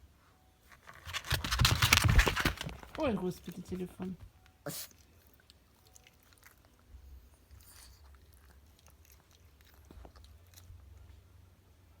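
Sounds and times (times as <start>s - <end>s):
dog chewing crunches: 0.7s - 4.0s, 4.9s - 11.2s.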